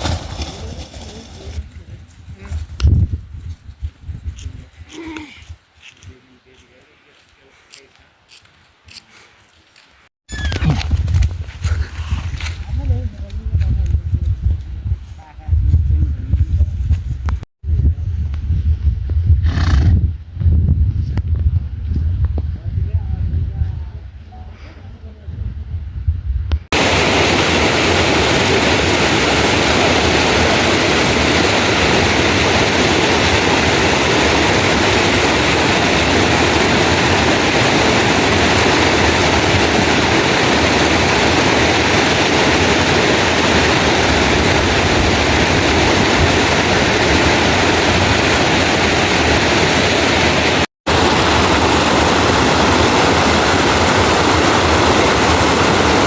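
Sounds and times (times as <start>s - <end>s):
fast-flowing river water: 26.8s - 56.0s.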